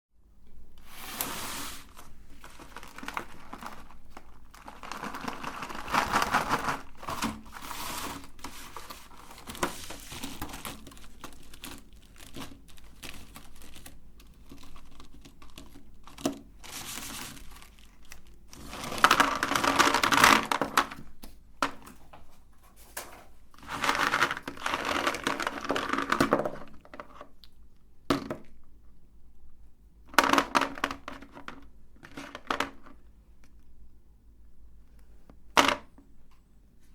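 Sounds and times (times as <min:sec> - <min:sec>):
candy wrappers crinkling: 0:01.2 - 0:21.2, 0:23.6 - 0:27.6.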